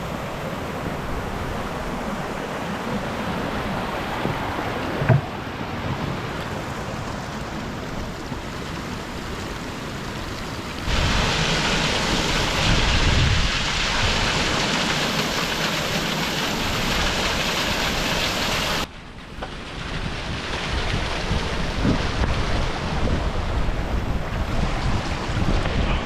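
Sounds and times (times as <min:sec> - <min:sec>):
rain: 0:00.0 - 0:26.0
storm wind: 0:00.0 - 0:26.0
wind rumble on microphone: 0:10.8 - 0:14.4, 0:18.8 - 0:26.0.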